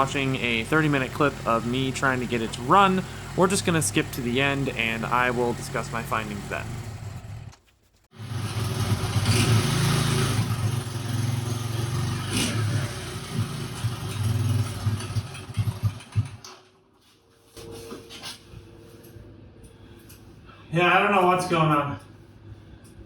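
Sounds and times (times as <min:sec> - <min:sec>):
engine running unevenly: 0:00.0 - 0:07.5, 0:08.2 - 0:16.4.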